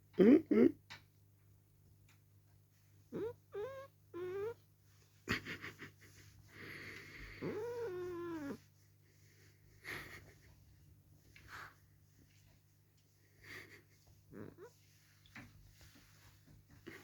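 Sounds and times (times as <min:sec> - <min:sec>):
cat meowing: 0:03.1 - 0:04.6, 0:07.4 - 0:08.6
cat yowling: 0:03.1 - 0:04.6, 0:07.4 - 0:08.6.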